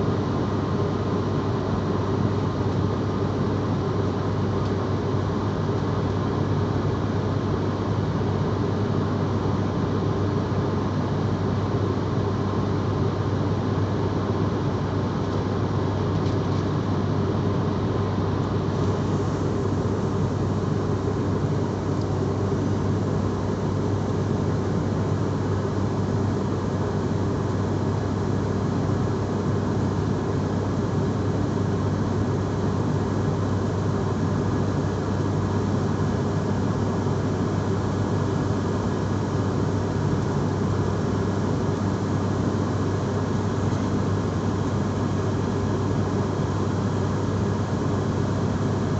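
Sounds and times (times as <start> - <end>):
airplane engines droning: 0.0 - 48.9.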